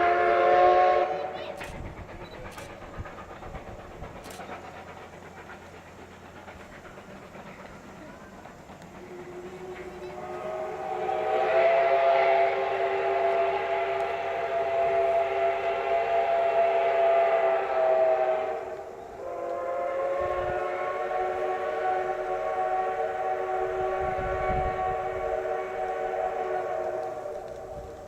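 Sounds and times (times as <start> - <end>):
steam locomotive whistle: 0.0 - 2.8, 8.8 - 28.0.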